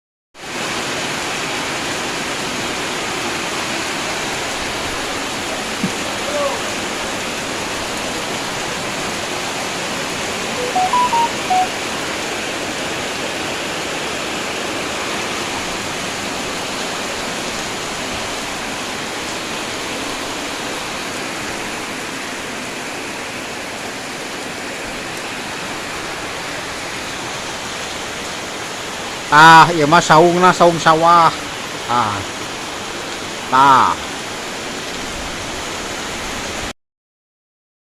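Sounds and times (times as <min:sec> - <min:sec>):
heavy rain pouring: 0:00.4 - 0:36.7
short electronic beeps: 0:10.6 - 0:11.7.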